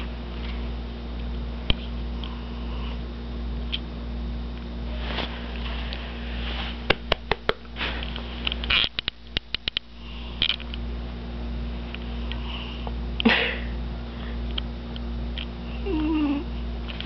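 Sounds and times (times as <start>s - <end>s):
steady low hum: 0.0s - 17.0s
sharp clicks: 8.5s - 10.8s
cat snoring: 15.8s - 16.4s.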